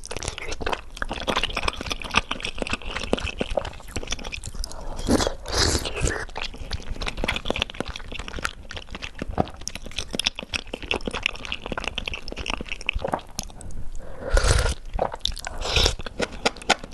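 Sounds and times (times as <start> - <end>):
chewing mouth sounds: 0.0 - 16.9
gulp or slurp: 1.3 - 6.5, 14.1 - 16.2.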